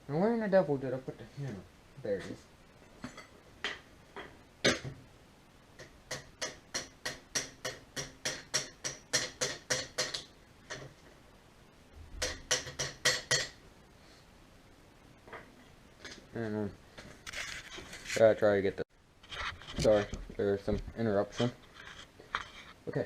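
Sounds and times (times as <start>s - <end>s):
hammer tapping on metal: 5.8s - 10.8s, 12.2s - 13.6s.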